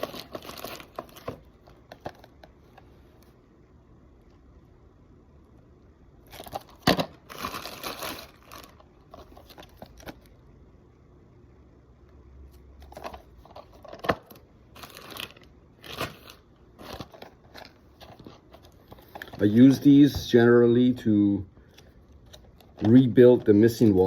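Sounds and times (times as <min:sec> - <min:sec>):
packaging tearing and crinkling: 0:00.0 - 0:02.2, 0:06.3 - 0:10.3, 0:12.9 - 0:19.5.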